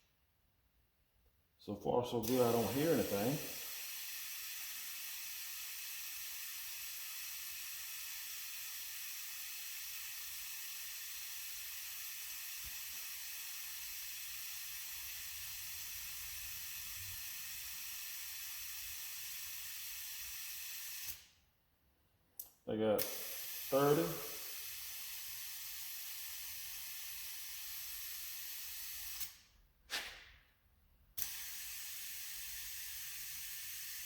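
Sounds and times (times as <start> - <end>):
compressed air hissing into tire: 2.2 - 17.6, 23.0 - 30.1, 31.2 - 34.0.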